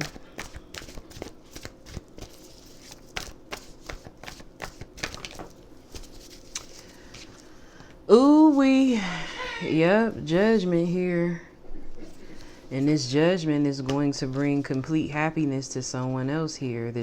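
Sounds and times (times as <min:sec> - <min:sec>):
cards being shuffled: 0:00.0 - 0:07.5.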